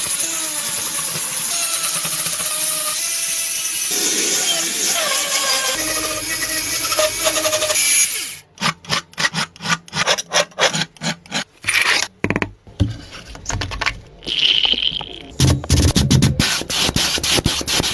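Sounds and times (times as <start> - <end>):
tool grinding: 0.0 - 12.1.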